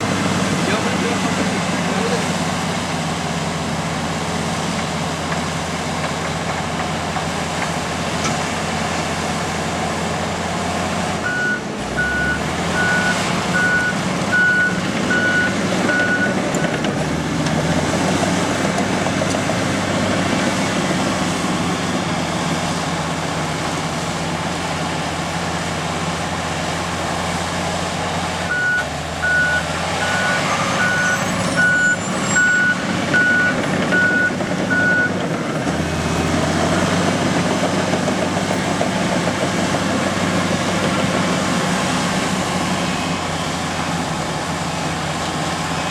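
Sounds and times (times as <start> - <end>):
bulldozer diesel engine running: 0.0 - 45.9
reverse alarm beeping: 11.2 - 16.4, 28.5 - 35.1.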